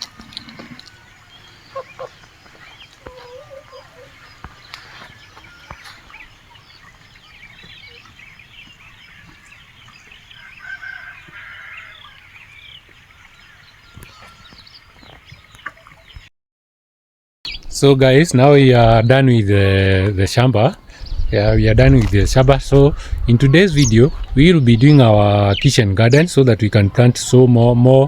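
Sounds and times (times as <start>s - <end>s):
chickens clucking: 0.0s - 13.3s, 20.9s - 27.9s.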